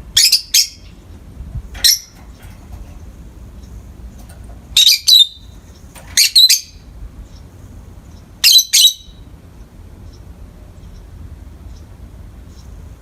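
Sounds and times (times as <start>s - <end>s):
lovebird shrill squawking: 4.8s - 5.5s, 6.2s - 6.8s, 8.4s - 9.2s.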